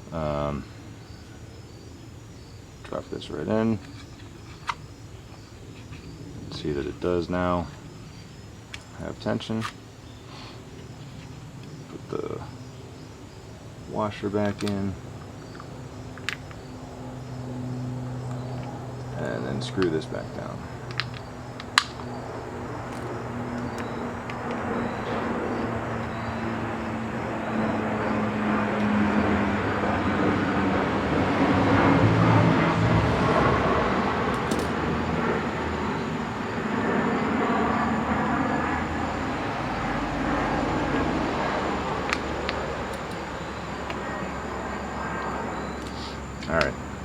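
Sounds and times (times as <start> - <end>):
passing engine rushing: 16.7 - 47.0.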